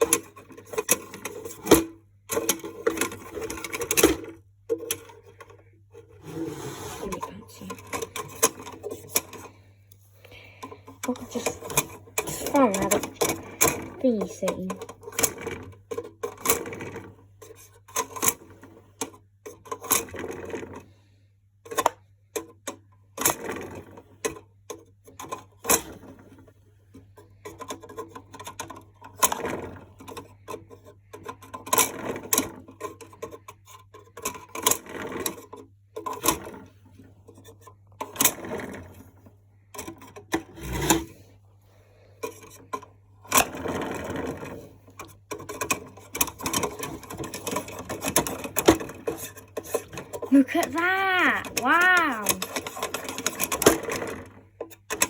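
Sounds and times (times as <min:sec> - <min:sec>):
plastic toy clicks and rattles: 0:00.0 - 0:05.6, 0:07.0 - 0:09.5, 0:10.6 - 0:20.9, 0:21.7 - 0:26.4, 0:27.2 - 0:36.7, 0:37.3 - 0:39.1, 0:42.2 - 0:55.0.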